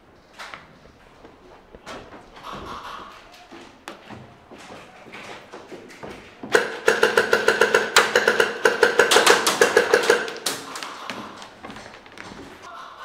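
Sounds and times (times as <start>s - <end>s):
toy gun firing rapid shots: 6.5s - 10.8s.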